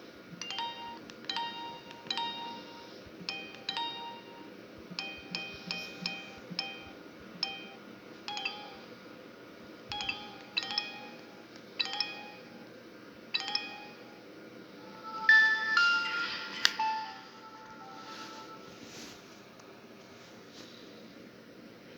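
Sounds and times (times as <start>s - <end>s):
phone ringtone chiming melody: 0.4s - 8.9s, 9.9s - 12.7s, 13.4s - 14.2s, 14.8s - 18.8s.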